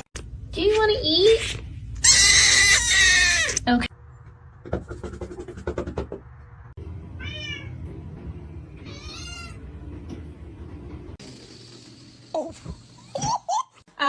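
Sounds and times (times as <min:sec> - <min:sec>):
cat meowing: 0:08.8 - 0:09.6.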